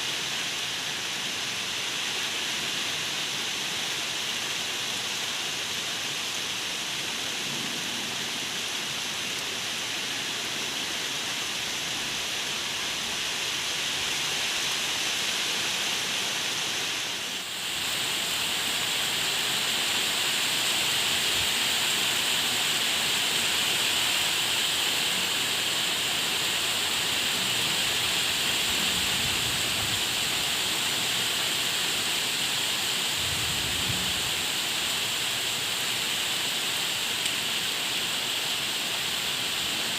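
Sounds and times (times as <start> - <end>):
heavy rainfall: 0.0 - 39.9.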